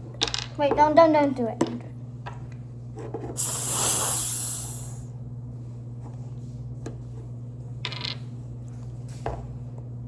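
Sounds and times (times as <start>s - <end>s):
aerosol can spraying hiss: 3.4s - 5.0s.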